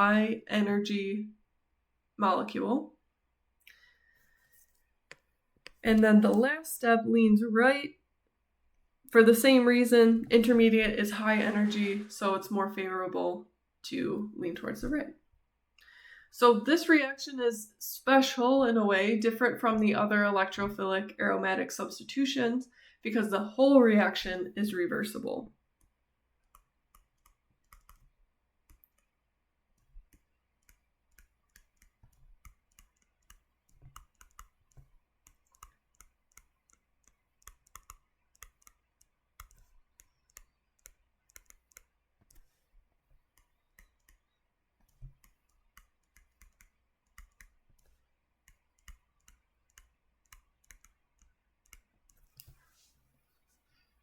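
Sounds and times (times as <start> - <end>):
stylus tapping on tablet screen: 5.0 - 6.5, 25.8 - 29.2, 29.8 - 52.6.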